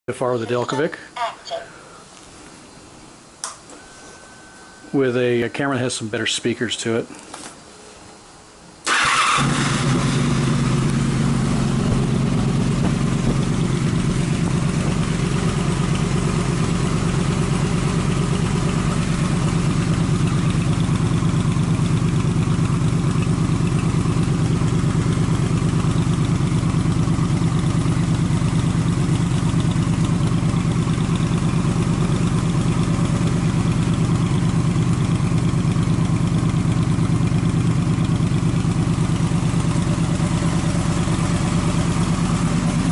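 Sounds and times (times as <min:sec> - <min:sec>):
motorcycle engine starting and idling: 0:08.8 - 0:42.9.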